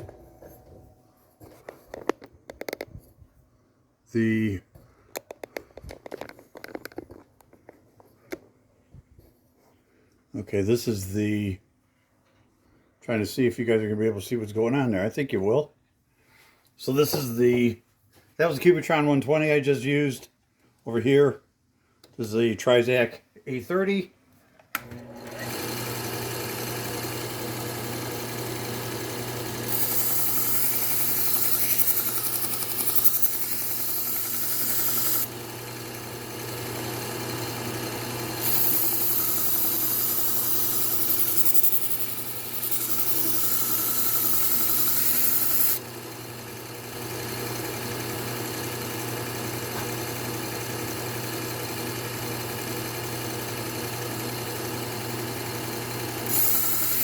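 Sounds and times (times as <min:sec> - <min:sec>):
belt sharpener motor running: 0:24.8 - 0:57.0
knife grinding on belt: 0:29.7 - 0:35.3, 0:38.4 - 0:45.8.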